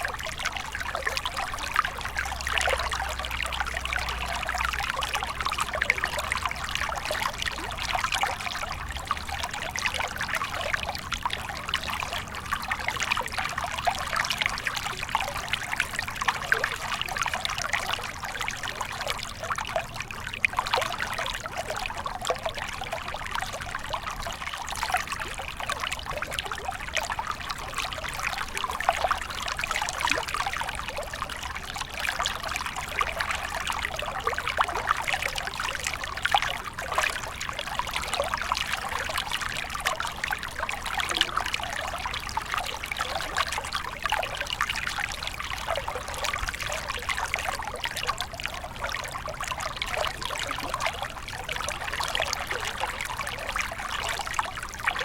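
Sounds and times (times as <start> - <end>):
stream flowing over stones: 0.0 - 55.0.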